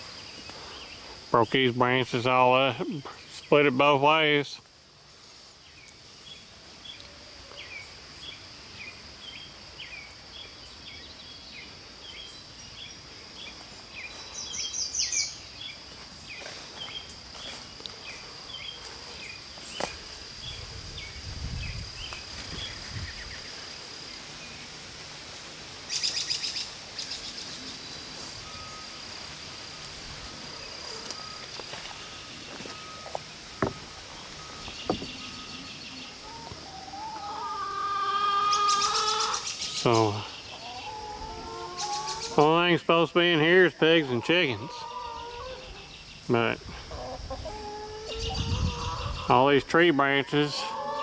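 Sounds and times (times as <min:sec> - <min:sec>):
bird chirping: 0:05.7 - 0:17.2, 0:25.9 - 0:29.2, 0:30.3 - 0:37.6, 0:38.3 - 0:41.0.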